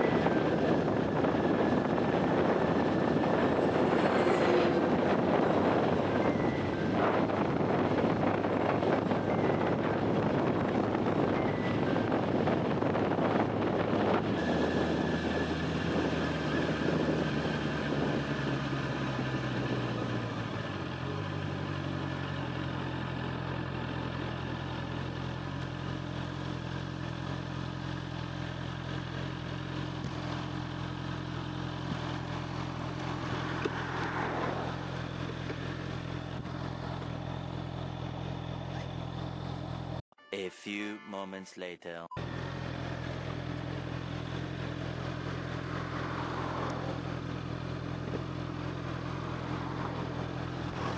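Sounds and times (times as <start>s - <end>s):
wind noise: 0.0s - 18.4s
motorcycle engine running: 0.0s - 40.0s, 42.2s - 50.9s.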